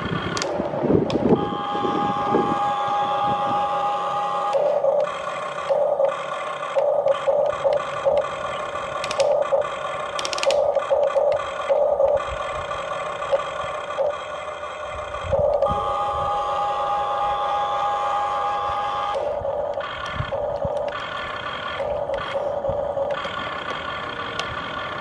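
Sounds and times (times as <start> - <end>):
small electric motors whining: 0.0 - 25.0
plastic parts clicking: 0.2 - 1.4, 4.5 - 12.3, 23.0 - 24.6.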